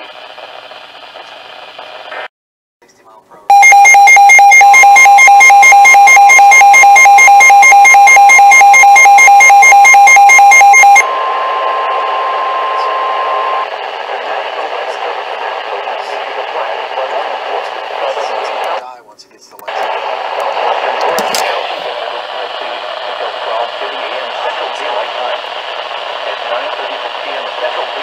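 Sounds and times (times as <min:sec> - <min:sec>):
radio static: 0:00.0 - 0:02.3, 0:03.5 - 0:18.9, 0:19.6 - 0:28.0
rapid electronic alert beeping: 0:03.5 - 0:11.1
steady warning alarm tone: 0:03.5 - 0:13.7.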